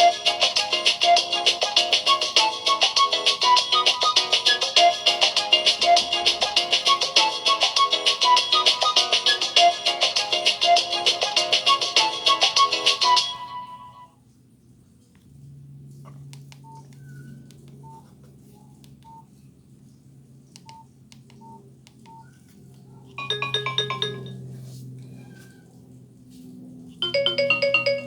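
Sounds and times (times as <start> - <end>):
phone alert tones: 23.2 - 24.4, 27.0 - 28.0.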